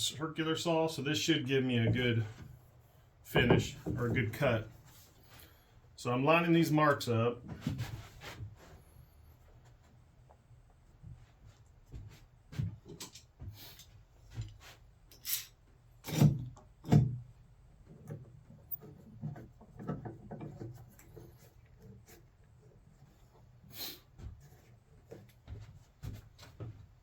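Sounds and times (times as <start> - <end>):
thumps on wooden tabletop: 3.4 - 4.4.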